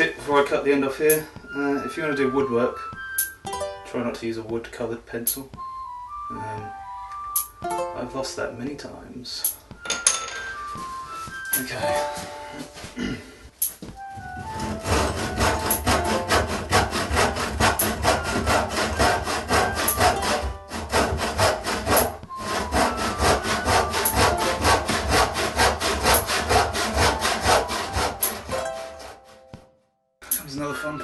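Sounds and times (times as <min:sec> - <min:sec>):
hand saw cutting wood: 0:14.4 - 0:29.5.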